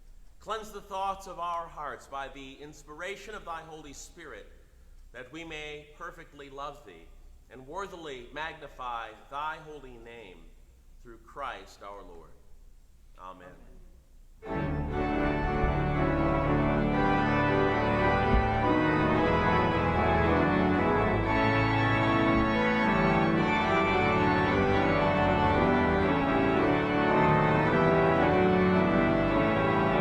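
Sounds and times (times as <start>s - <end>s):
church organ chords: 14.4s - 30.0s.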